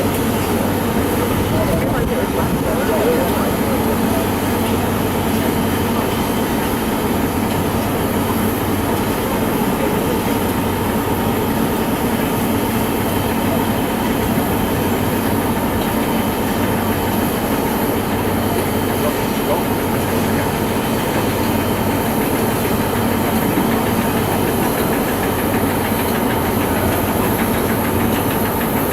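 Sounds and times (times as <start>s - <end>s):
steam locomotive rumble: 0.0s - 28.9s.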